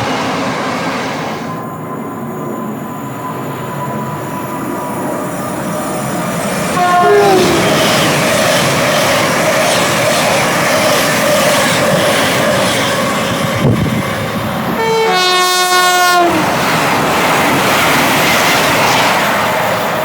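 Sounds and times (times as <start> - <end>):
running train rushing: 0.0 - 20.0
train two-tone horn: 6.7 - 9.0, 14.7 - 16.6.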